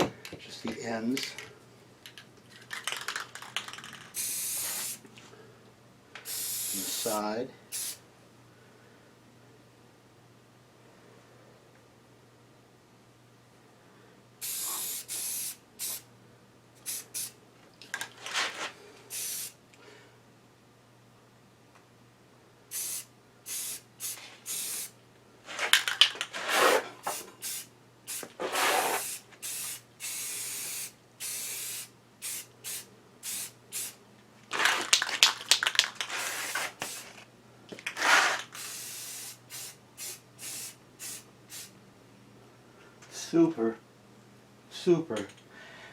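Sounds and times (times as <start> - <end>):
spray paint hissing in bursts: 4.1 - 5.0, 6.2 - 8.0, 14.4 - 16.1, 16.8 - 17.4, 19.1 - 19.6, 22.7 - 24.9, 26.4 - 34.0, 36.1 - 37.1, 38.0 - 41.8.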